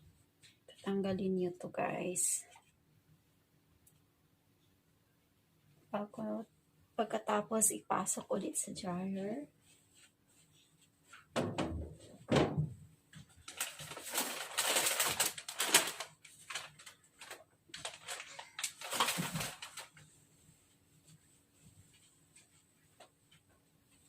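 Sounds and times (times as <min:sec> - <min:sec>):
laundry rustling and scraping: 0:08.8 - 0:24.0.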